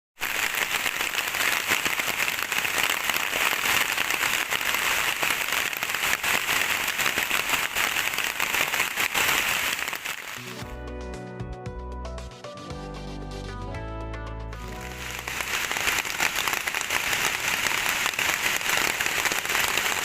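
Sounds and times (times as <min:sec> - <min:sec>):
rain falling: 0:00.2 - 0:10.6, 0:14.6 - 0:20.0.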